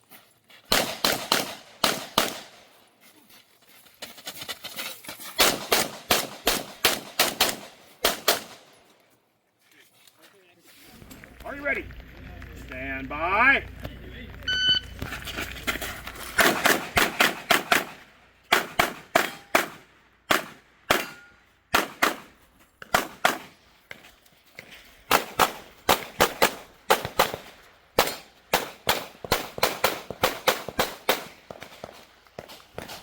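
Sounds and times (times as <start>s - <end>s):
pistol shots in rapid bursts: 0.7s - 2.7s, 5.4s - 8.7s, 16.4s - 23.6s, 25.1s - 33.0s.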